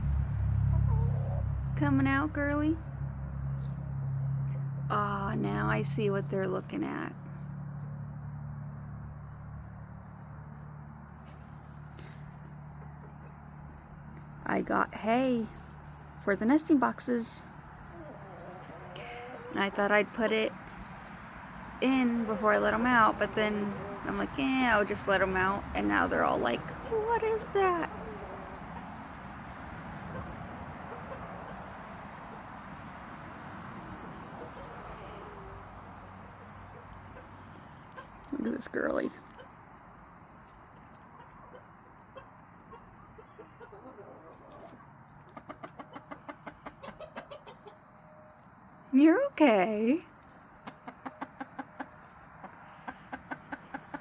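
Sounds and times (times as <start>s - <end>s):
low steady hum: 0.0s - 10.9s
insects trilling: 0.0s - 54.0s.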